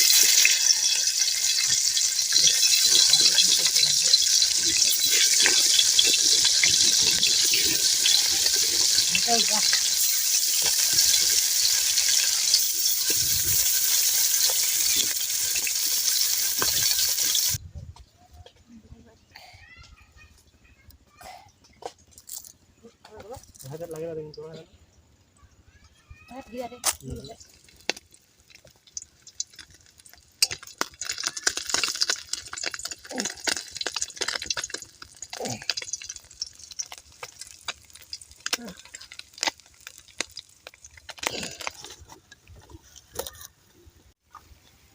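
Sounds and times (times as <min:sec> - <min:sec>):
meat sizzling in a pan: 0:00.0 - 0:17.6, 0:26.8 - 0:41.9
stirring clicks and knocks: 0:27.4 - 0:43.6.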